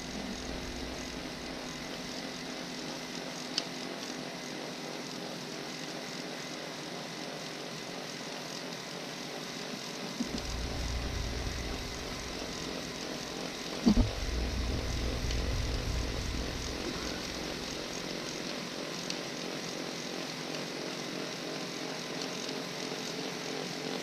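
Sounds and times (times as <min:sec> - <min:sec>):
low rumble: 0:00.0 - 0:02.3, 0:10.2 - 0:18.4
snowblower engine droning: 0:00.0 - 0:02.6, 0:10.2 - 0:18.4.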